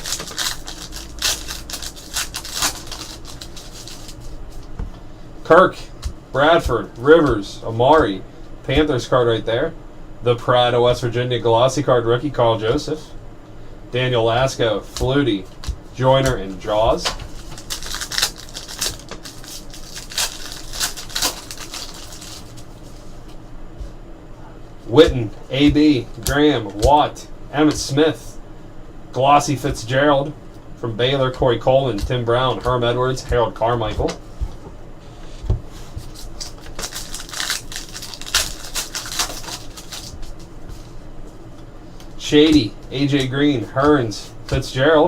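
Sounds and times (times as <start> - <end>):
trading cards flipping: 0.0 - 4.7, 17.1 - 23.1, 35.9 - 40.5.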